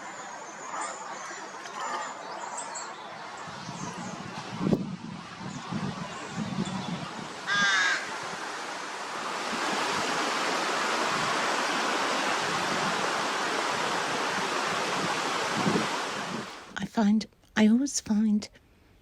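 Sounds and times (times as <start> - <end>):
steady rushing hiss: 2.2 - 16.8
crow cawing: 7.5 - 8.2.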